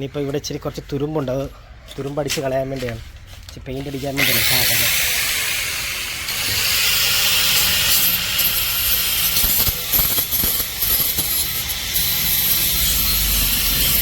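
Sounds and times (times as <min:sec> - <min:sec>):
spray paint hissing: 0:04.0 - 0:14.0.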